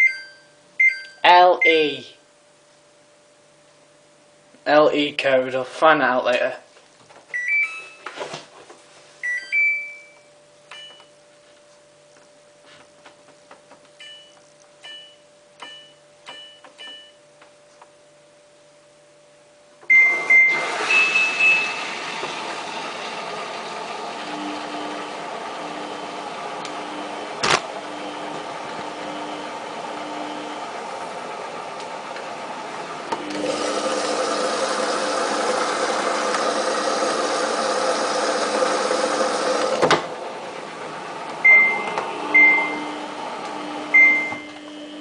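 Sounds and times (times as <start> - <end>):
higher start tone: 19.9 - 32.0, 41.4 - 45.0
water rushing into machine: 33.2 - 40.3
control panel beeping: 41.4 - 42.8, 44.0 - 44.6.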